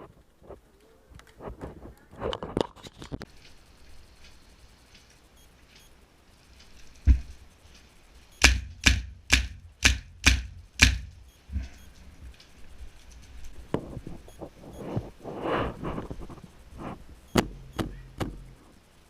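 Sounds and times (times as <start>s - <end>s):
airsoft rifle shots: 8.4s - 11.3s, 17.4s - 18.6s.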